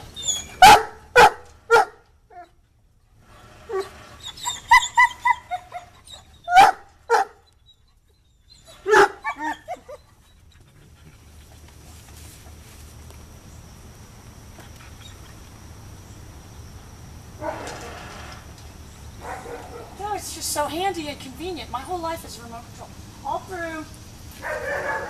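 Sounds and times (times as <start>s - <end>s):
dog barking: 0.6s - 2.0s, 6.5s - 7.4s, 8.8s - 9.5s, 19.2s - 20.0s, 24.4s - 25.0s.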